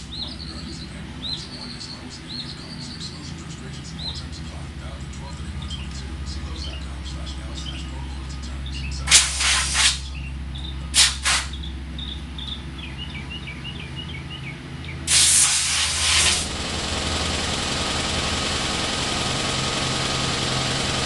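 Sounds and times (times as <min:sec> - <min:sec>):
low engine drone: 0:00.0 - 0:21.0
compressed air blasts: 0:09.1 - 0:10.1, 0:10.9 - 0:11.6, 0:15.1 - 0:21.0.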